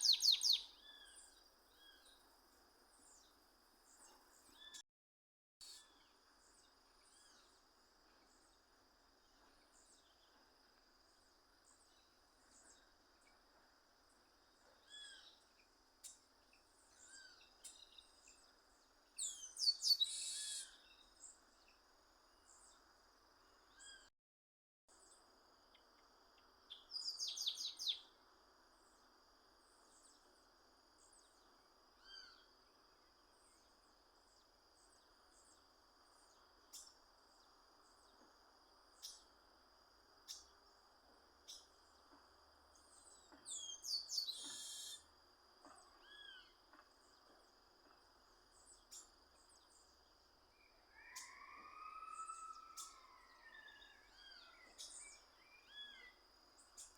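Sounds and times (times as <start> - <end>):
bird chips and trills: 0.0 - 0.7, 43.6 - 45.0
low arched bird whistles: 19.2 - 20.8, 43.6 - 45.1.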